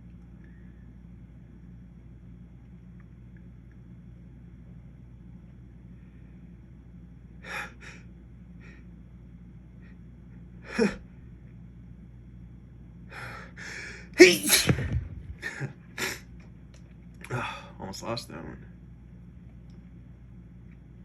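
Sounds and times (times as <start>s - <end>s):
sharp breaths before sneeze: 13.7s - 14.9s
man sneezing: 14.2s - 16.2s.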